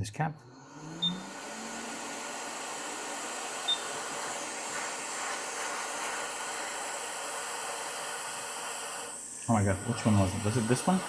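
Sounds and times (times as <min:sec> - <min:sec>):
hot air blower hissing: 0:00.5 - 0:11.0
short high beep: 0:01.0 - 0:01.2.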